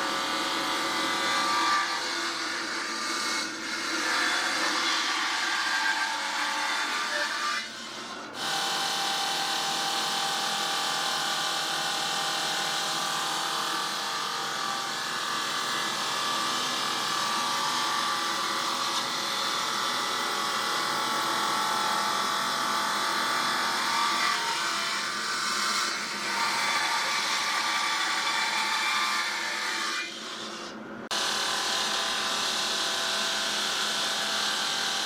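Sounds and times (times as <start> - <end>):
stone-cutting saw grinding: 0.0 - 32.8.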